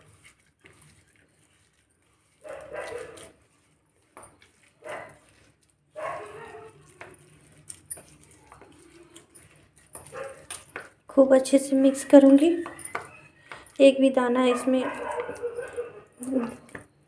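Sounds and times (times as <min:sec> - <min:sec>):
dog barking: 0:02.4 - 0:03.2, 0:04.8 - 0:05.2, 0:06.0 - 0:06.8, 0:10.1 - 0:10.4, 0:14.5 - 0:16.6.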